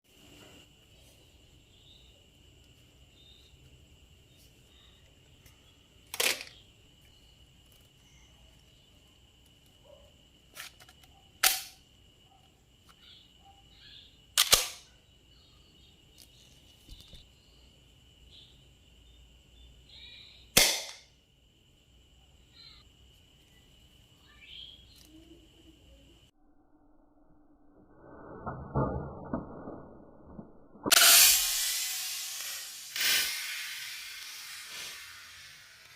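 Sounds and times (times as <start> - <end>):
toy gun firing pops: 11.4 - 11.8, 14.4 - 14.9, 20.6 - 21.1.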